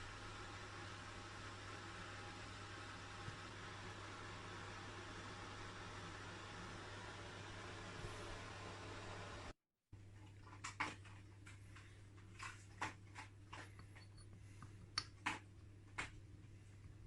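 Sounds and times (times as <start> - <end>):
low steady hum: 0.0 - 17.0
light clicks and taps: 10.2 - 16.6.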